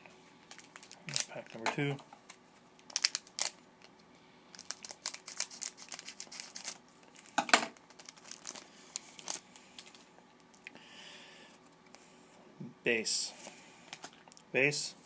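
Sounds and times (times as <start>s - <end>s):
wrapper tearing and crinkling: 0.5s - 1.6s, 2.8s - 3.6s, 4.5s - 9.4s.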